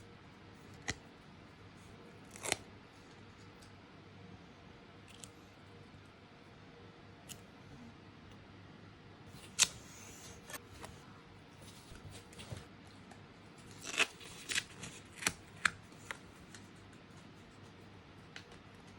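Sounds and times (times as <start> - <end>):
stickers being peeled: 2.2 - 2.7, 9.4 - 10.6, 13.6 - 16.8.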